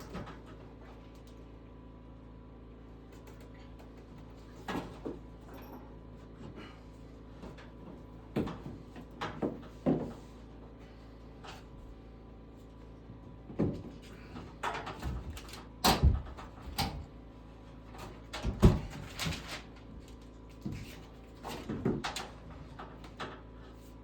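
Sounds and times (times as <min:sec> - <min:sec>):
steady low hum: 0:00.0 - 0:24.0
objects knocking and clunking: 0:07.4 - 0:10.3, 0:13.4 - 0:17.0, 0:20.6 - 0:23.5.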